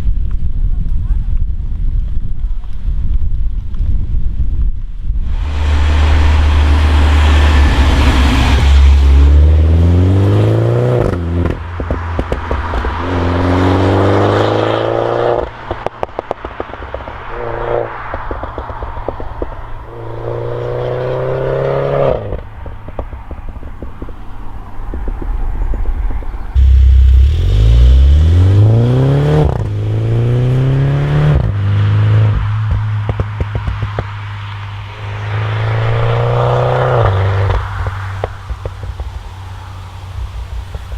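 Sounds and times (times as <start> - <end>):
car engine accelerating: 5.2 - 40.8
exhaust pops and crackles: 11.0 - 13.5, 14.7 - 20.0, 21.0 - 30.6, 31.2 - 34.9, 36.9 - 40.9
gear change: 23.2 - 29.9.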